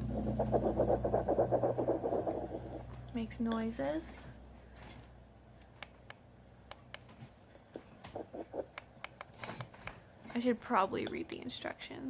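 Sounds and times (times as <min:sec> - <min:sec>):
fetal doppler speaker hum: 0:00.0 - 0:03.5, 0:08.1 - 0:08.8.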